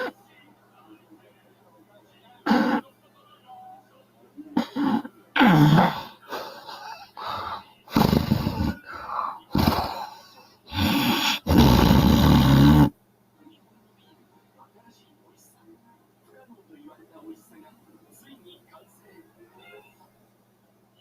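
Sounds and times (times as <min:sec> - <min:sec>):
woman snoring and snorting: 0:04.6 - 0:06.2, 0:07.4 - 0:08.9, 0:09.5 - 0:13.0.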